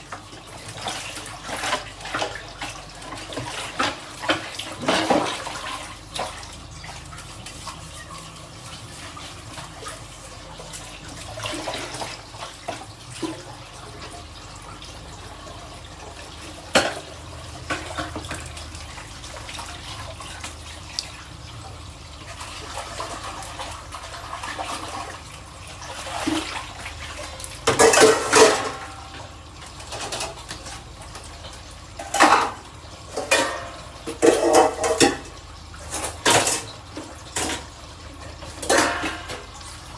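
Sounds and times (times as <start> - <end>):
water running into sink: 0.0 - 39.9
dishes clattering: 3.3 - 5.5, 16.7 - 17.1, 27.6 - 29.1, 32.0 - 37.7, 38.5 - 39.5
dishes clinking: 27.7 - 29.1, 32.0 - 35.3, 38.6 - 39.5.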